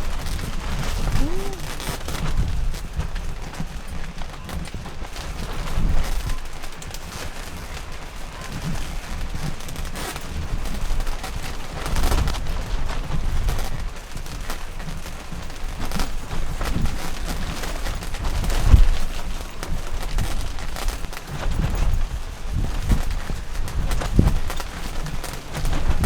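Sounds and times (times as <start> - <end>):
tent fabric flapping: 0.0 - 4.5.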